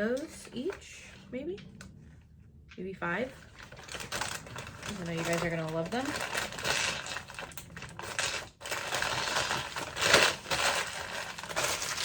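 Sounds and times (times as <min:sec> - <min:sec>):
stones clinking in plastic bag: 0:03.5 - 0:12.0.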